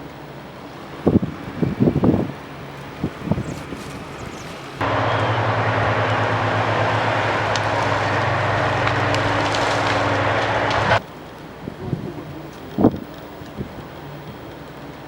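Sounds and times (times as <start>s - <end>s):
heavy machinery engine humming: 1.6s - 11.5s.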